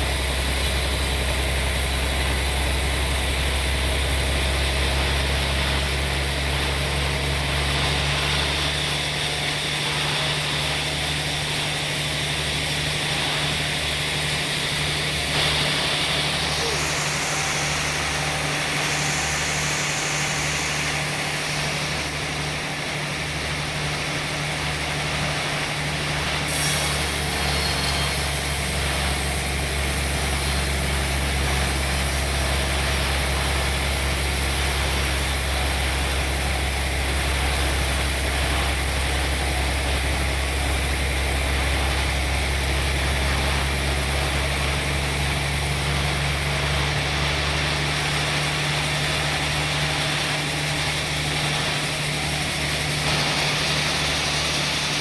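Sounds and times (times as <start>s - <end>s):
sawmill machinery engine drone: 0.0s - 55.0s
high hiss: 14.8s - 22.5s.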